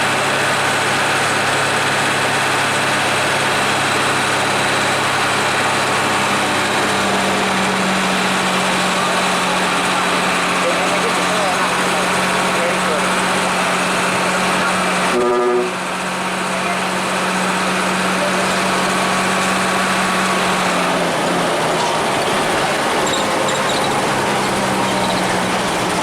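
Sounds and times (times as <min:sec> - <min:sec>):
bus diesel engine droning: 0:00.0 - 0:26.0
horn toot: 0:15.1 - 0:15.9.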